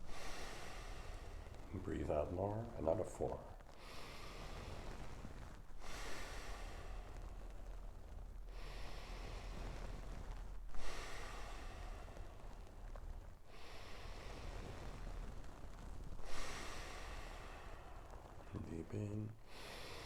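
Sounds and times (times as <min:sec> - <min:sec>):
person breathing deeply: 0:00.0 - 0:03.0, 0:03.7 - 0:20.0.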